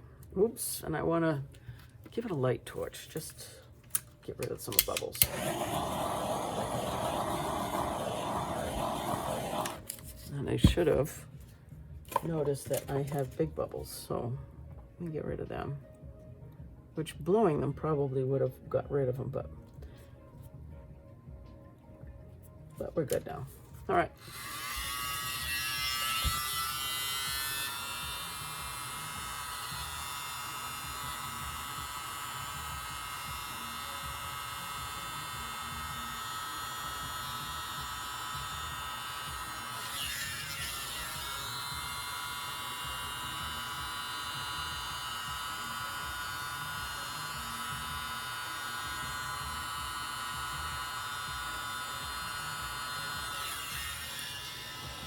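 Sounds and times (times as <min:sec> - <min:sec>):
mini blower motor whining: 0:05.2 - 0:09.9, 0:24.2 - 0:55.0.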